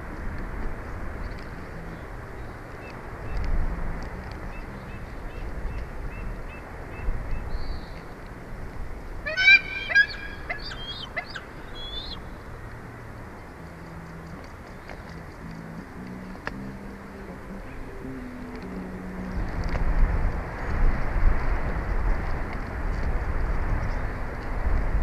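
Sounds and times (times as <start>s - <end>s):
wind noise on microphone: 0.0s - 25.0s
eagle high piping calls: 9.3s - 12.3s.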